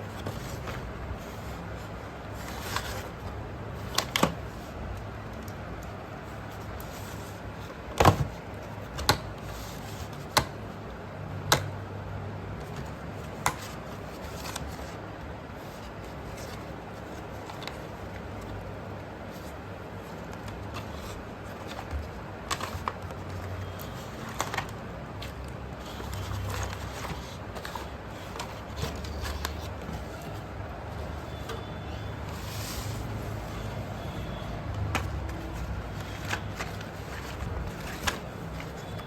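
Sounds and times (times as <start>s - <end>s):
pencils clicking and tapping: 19.4s - 30.4s, 34.1s - 39.0s.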